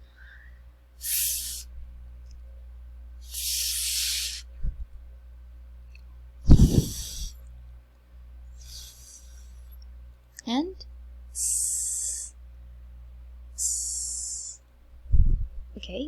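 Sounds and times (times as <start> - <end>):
woman making hissing fricatives: 1.0 - 1.8, 3.2 - 4.6, 6.5 - 7.4, 8.6 - 9.7, 11.4 - 12.4, 13.6 - 14.6.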